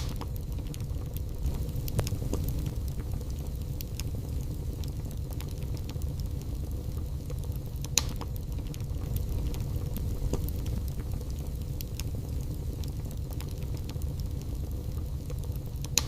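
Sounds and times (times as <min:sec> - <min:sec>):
wood fire crackling and popping: 0:00.0 - 0:16.0.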